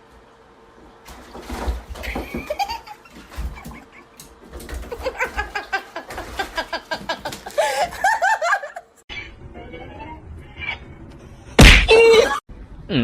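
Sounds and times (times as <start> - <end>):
person laughing: 4.9 - 9.0.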